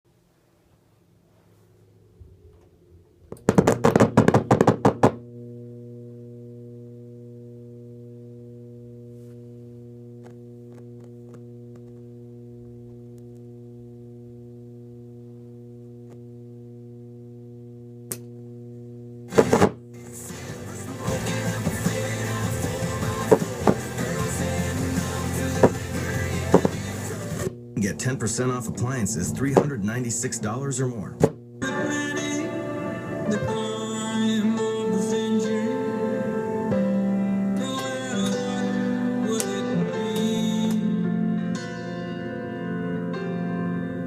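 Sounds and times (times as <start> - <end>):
steady electrical hum: 0.1 - 44.0
radio crackling: 8.4 - 36.9
music from radio: 19.3 - 27.5, 31.6 - 40.9.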